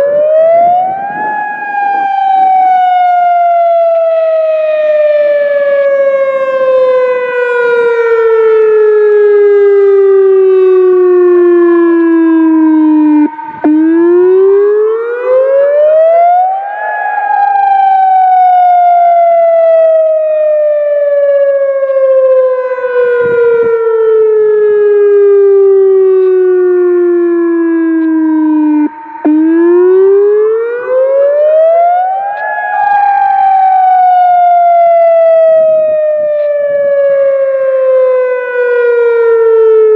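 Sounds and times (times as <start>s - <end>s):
warning siren wailing: 0.0s - 39.9s.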